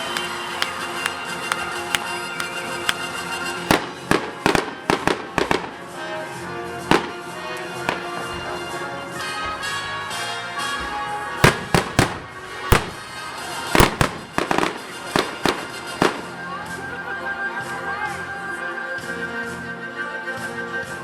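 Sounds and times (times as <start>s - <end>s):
fireworks bangs: 0.0s - 6.0s, 6.9s - 8.5s, 11.4s - 16.4s
music: 0.0s - 21.0s.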